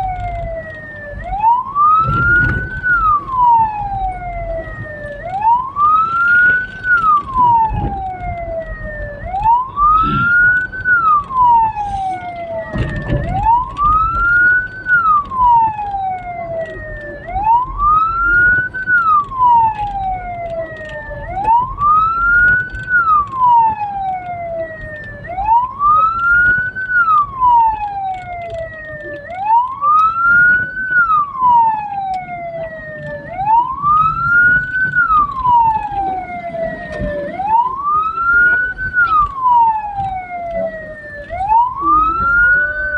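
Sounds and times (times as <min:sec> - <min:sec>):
road noise: 0:00.0 - 0:42.9
siren wailing: 0:00.0 - 0:42.9
low thumps: 0:01.2 - 0:05.6.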